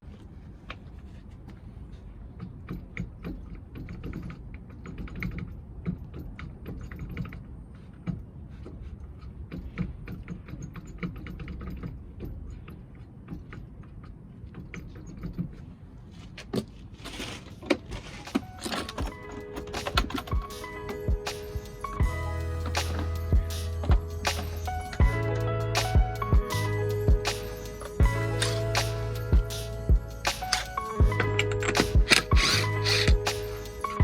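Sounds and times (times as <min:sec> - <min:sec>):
steady low rumble: 0:20.4 - 0:34.0.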